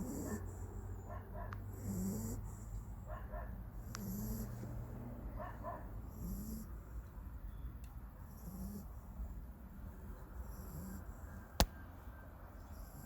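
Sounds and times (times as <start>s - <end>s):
dog snoring: 0.0s - 0.7s, 1.7s - 2.8s, 3.8s - 4.7s, 6.1s - 6.8s, 8.3s - 9.0s, 10.4s - 11.3s.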